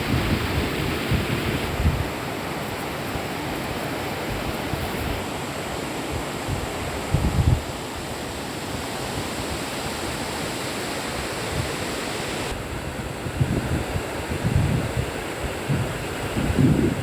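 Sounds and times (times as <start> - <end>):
wind rumble on microphone: 0.0 - 2.3, 6.2 - 7.7, 12.5 - 17.0
river water rushing: 0.0 - 13.2.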